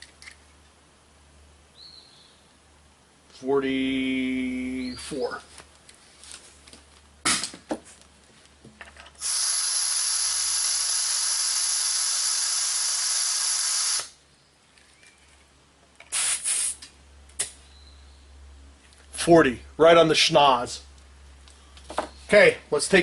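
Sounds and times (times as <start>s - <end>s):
air hissing from tire valve: 9.2s - 14.2s, 16.1s - 16.9s.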